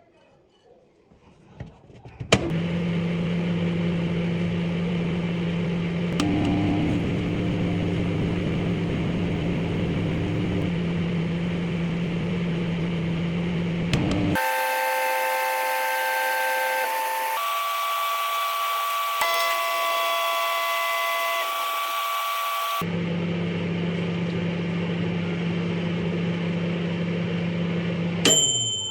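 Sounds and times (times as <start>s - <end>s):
microwave oven humming: 2.4s - 28.9s
high tonal whine: 3.4s - 23.0s
click: 6.1s - 6.7s, 13.9s - 14.3s.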